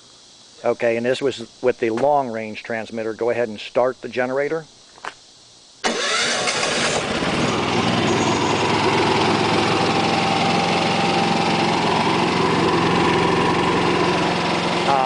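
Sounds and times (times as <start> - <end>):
generator engine running: 5.8 - 15.0
generator starter cranking: 5.8 - 15.0.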